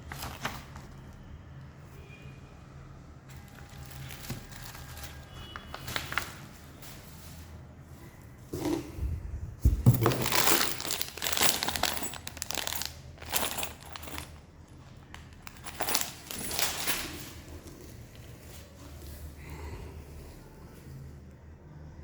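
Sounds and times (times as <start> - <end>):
packaging crinkling and rustling: 0.0 - 1.2, 3.3 - 7.6, 9.9 - 19.2.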